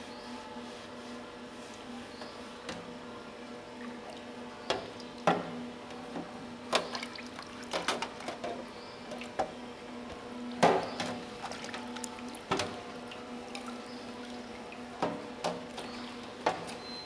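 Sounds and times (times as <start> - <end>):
liquid splashing and sloshing: 6.7 - 9.6, 10.6 - 16.8.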